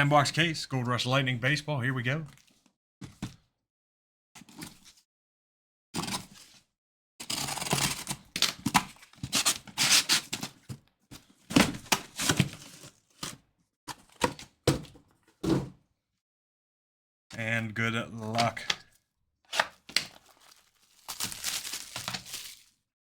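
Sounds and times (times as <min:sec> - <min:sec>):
cardboard tearing: 0:19.5 - 0:22.8
wrapping crinkling: 0:19.6 - 0:22.8.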